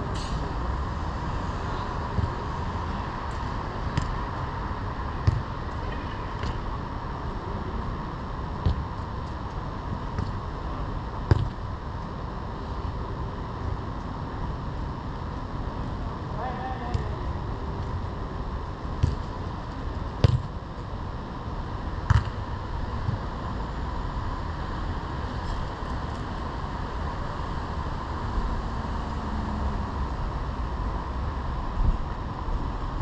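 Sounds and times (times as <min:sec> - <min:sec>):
football kick thuds: 0:05.2 - 0:05.6, 0:08.6 - 0:08.8, 0:11.3 - 0:11.6, 0:19.0 - 0:19.3, 0:20.2 - 0:20.5, 0:22.1 - 0:22.4.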